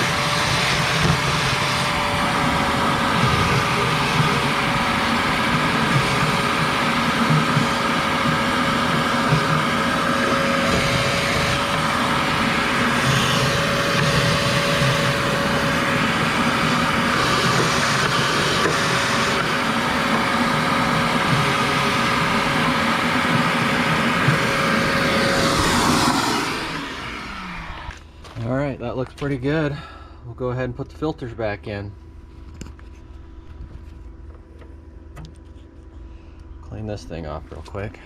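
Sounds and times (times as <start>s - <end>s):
motor whine: 0.0s - 29.6s.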